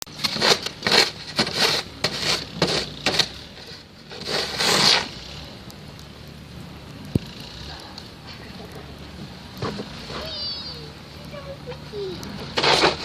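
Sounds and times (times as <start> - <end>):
crunching in snow: 0.1 - 5.4
scraping in snow: 0.2 - 5.3.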